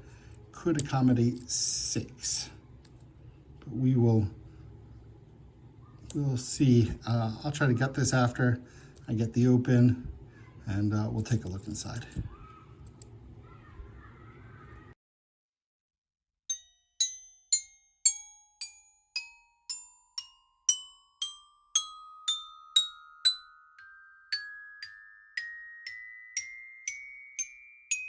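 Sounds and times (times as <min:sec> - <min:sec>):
bell-like mallet percussion notes: 0:16.5 - 0:28.0.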